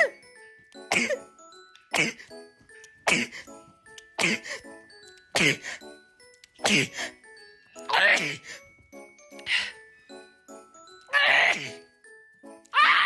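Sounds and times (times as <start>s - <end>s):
light background music: 0.0s - 13.0s
person sneezing: 1.9s - 2.3s, 6.6s - 7.1s.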